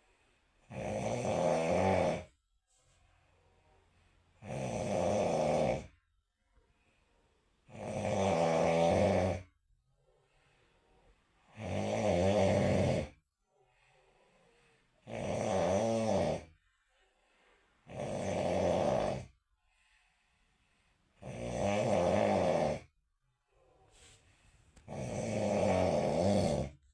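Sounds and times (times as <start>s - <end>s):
person snoring: 0.6s - 2.4s, 4.4s - 6.0s, 7.6s - 9.6s, 11.4s - 13.3s, 15.0s - 16.6s, 17.8s - 19.4s, 21.2s - 23.0s, 24.8s - 26.9s.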